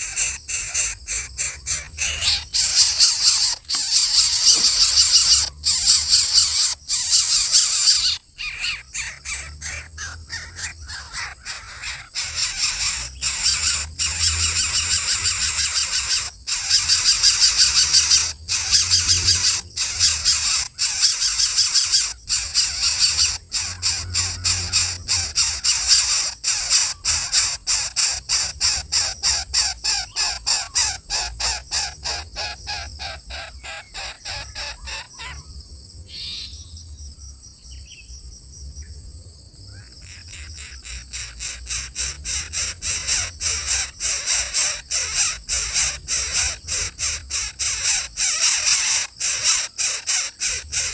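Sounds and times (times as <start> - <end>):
bird chick rasping calls: 0.0 - 35.5, 39.7 - 50.9.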